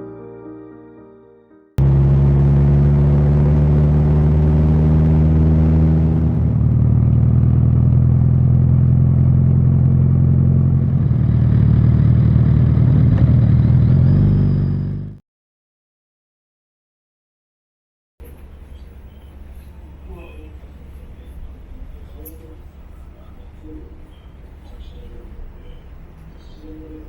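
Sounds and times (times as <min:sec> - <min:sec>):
engine running: 0:01.8 - 0:15.2.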